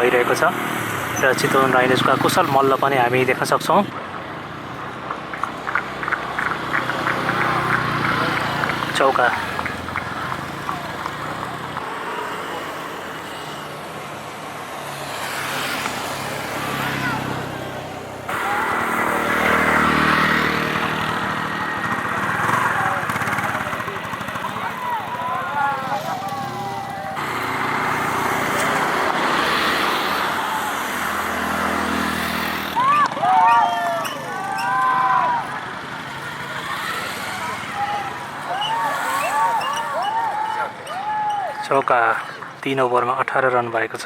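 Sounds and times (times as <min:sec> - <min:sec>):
vehicle engine humming: 0:00.0 - 0:41.1
outdoor noise: 0:00.0 - 0:44.0
rushing noise: 0:11.8 - 0:33.4.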